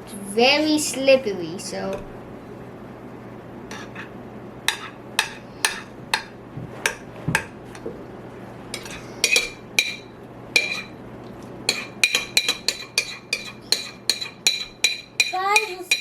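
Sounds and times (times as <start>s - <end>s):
child's voice: 15.3s - 16.0s.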